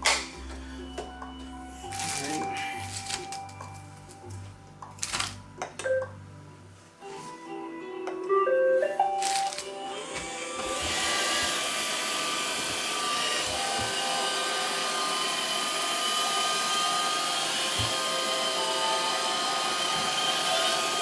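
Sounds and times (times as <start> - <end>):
robot vacuum whirring: 9.2 - 21.0.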